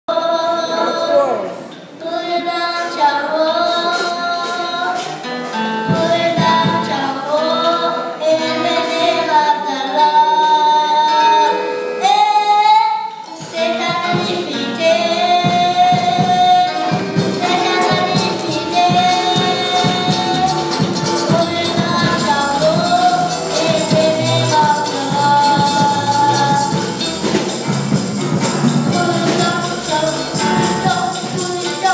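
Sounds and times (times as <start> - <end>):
choir voices: 0.1 - 31.9
percussion: 2.7 - 7.1, 13.3 - 31.9
woman singing gospel: 5.9 - 27.5, 28.7 - 31.9.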